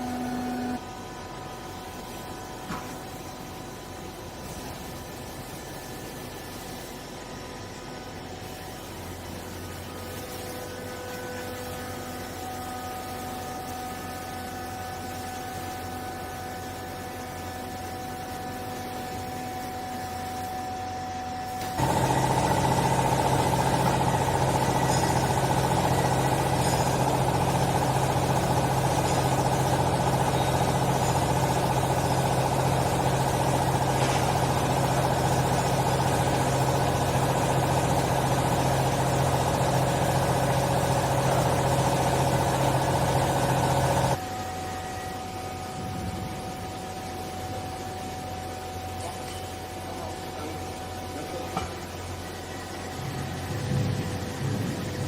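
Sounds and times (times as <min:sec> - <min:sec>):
hydraulic power unit humming: 0:00.0 - 0:55.0.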